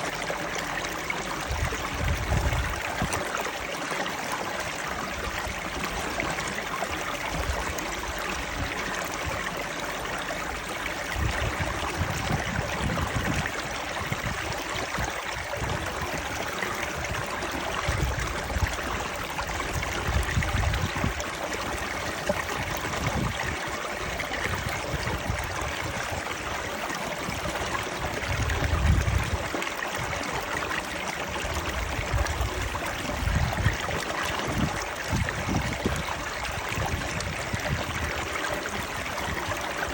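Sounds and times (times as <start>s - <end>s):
stream water rushing: 0.0s - 39.9s.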